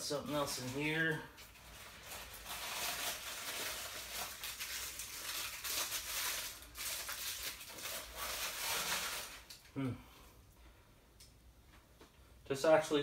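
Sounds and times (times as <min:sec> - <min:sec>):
packaging rustling and crinkling: 0:00.2 - 0:09.7.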